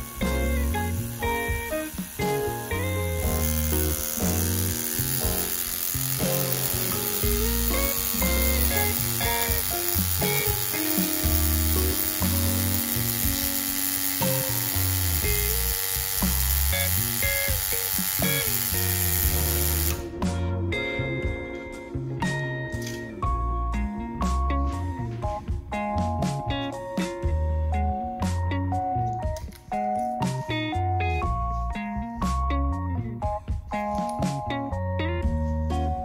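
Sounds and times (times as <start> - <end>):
melody over repeating bass line: 0.0 - 12.5, 18.8 - 29.1.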